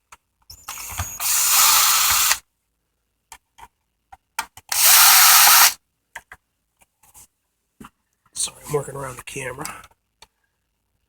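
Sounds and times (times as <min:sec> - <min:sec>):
power screwdriver running: 0:00.7 - 0:02.4, 0:04.7 - 0:05.8.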